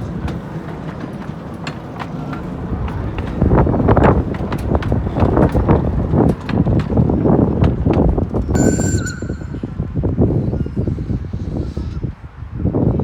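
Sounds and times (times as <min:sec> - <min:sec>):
train rhythmic pulsing: 0:00.0 - 0:10.4.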